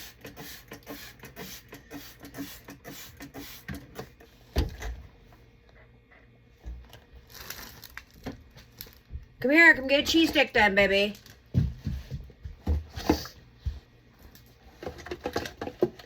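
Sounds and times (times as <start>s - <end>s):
spray bottle hissing: 0.0s - 3.7s.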